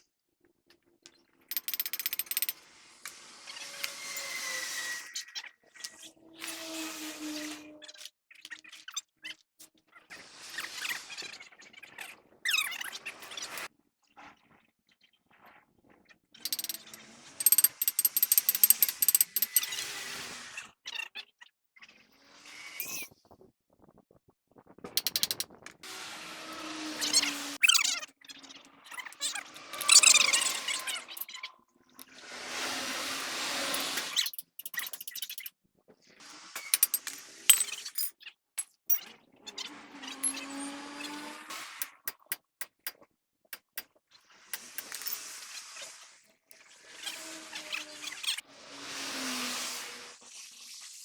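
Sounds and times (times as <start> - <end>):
metal tools clinking and knocking: 1.5 - 2.6, 16.5 - 19.8, 25.0 - 25.5, 33.7 - 35.5, 36.6 - 39.0, 40.2 - 40.5, 44.6 - 45.2
rapid metallic clicking: 16.5 - 19.7, 25.0 - 25.4.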